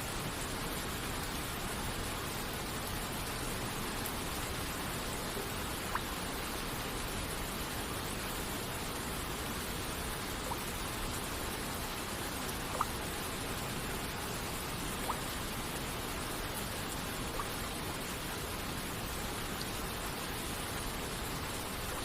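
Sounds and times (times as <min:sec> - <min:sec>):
rain and waterfall hiss: 0:00.0 - 0:22.0
water droplets plinking: 0:12.7 - 0:13.0, 0:15.0 - 0:15.3.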